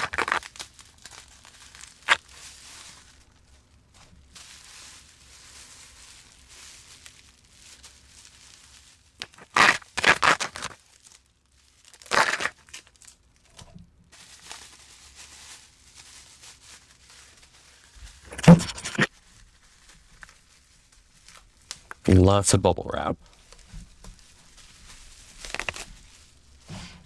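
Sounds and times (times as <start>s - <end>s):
bubble wrap being torn open: 0.0s - 2.8s, 6.2s - 13.1s, 18.3s - 19.1s, 24.5s - 26.6s
faint plastic crinkling: 0.0s - 27.0s.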